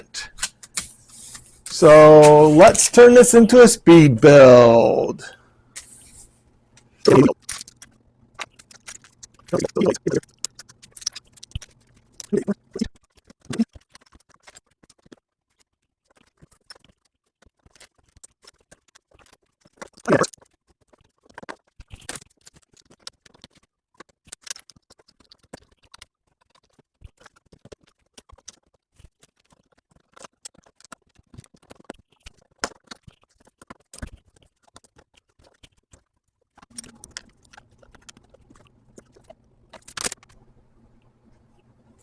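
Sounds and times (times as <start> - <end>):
plastic bricks clicking and rattling: 6.8 - 40.4
faint steady hum: 36.7 - 42.0.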